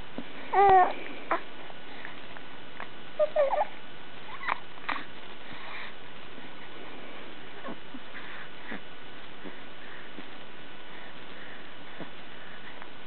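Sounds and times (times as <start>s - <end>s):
soft coo: 3.2s - 5.0s.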